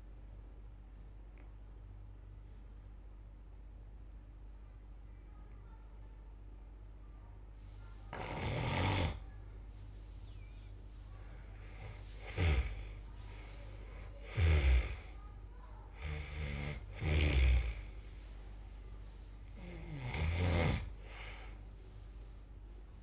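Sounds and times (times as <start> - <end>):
quiet steady breathing: 7.5 - 23.0
person snoring: 8.1 - 9.2, 11.6 - 13.0, 14.0 - 15.2, 16.0 - 18.0, 19.6 - 21.6.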